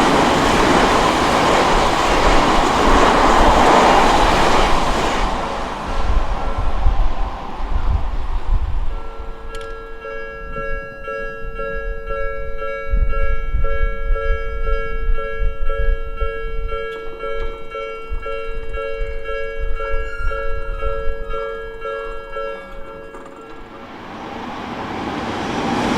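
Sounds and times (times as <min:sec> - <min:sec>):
level crossing warning bell dinging: 0:09.0 - 0:25.9.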